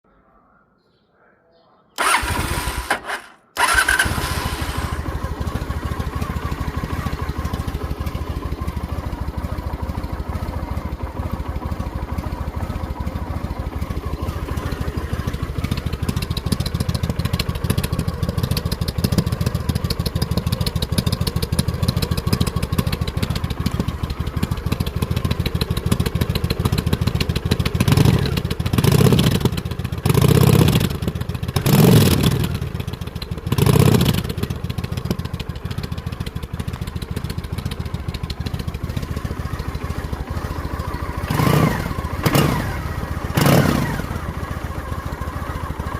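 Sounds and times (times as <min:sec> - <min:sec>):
motorcycle throttle blips: 0:02.0 - 0:09.2
motorcycle engine starting and idling: 0:02.0 - 0:45.9.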